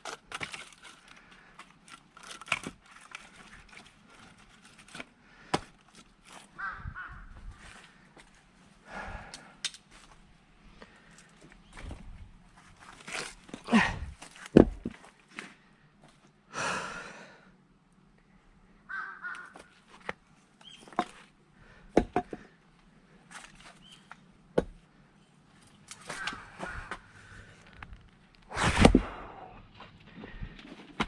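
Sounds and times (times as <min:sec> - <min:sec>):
axe blows splitting wood: 0:28.5 - 0:29.5.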